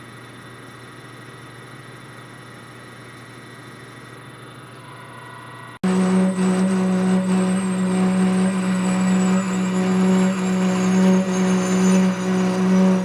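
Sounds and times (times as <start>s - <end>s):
metal lathe humming: 4.6s - 13.0s
electronic background music: 5.8s - 13.0s.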